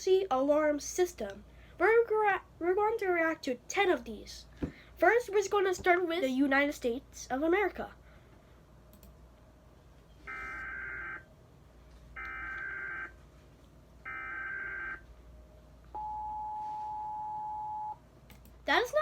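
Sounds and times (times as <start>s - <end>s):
two-tone attention signal: 16.0s - 18.0s.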